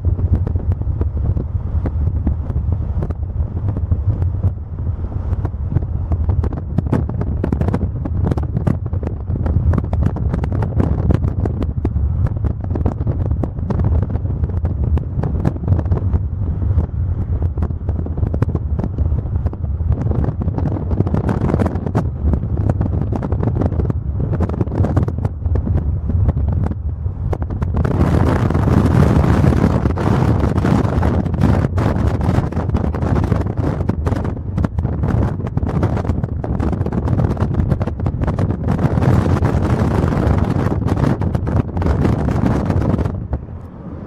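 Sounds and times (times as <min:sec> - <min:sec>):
wind buffeting microphone: 0:00.0 - 0:44.0.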